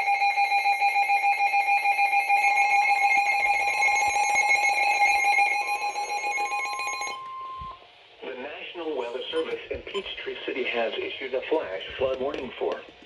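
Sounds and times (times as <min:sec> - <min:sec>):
electronic two-tone alert: 0:00.0 - 0:07.8.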